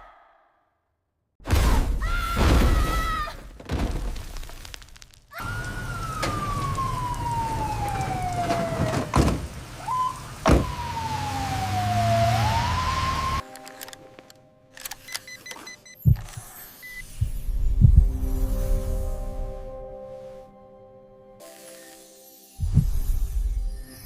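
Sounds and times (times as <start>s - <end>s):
sharp thuds: 1.4s - 5.2s
siren wailing: 5.4s - 9.2s, 9.8s - 13.4s
low rumble: 17.1s - 19.8s.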